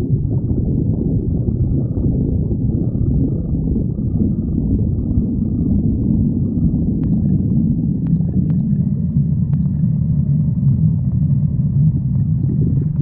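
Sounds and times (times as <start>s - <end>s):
stomach growling: 0.0s - 13.0s.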